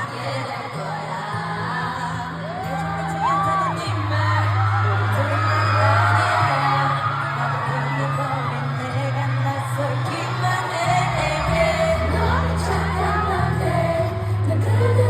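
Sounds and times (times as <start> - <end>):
women singing slow pop song: 0.0 - 15.0
bass notes and backing track: 8.5 - 15.0.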